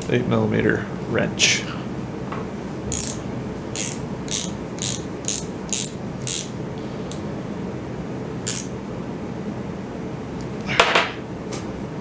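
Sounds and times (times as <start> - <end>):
wrench clicking: 2.9 - 3.2, 3.8 - 6.5, 8.5 - 8.7.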